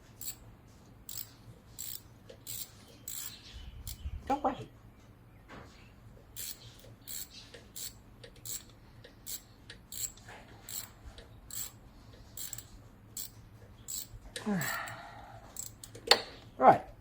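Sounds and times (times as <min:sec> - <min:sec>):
socket ratchet clicking: 0:00.2 - 0:00.4, 0:01.1 - 0:04.0, 0:06.4 - 0:11.8, 0:12.4 - 0:14.1, 0:15.6 - 0:16.3.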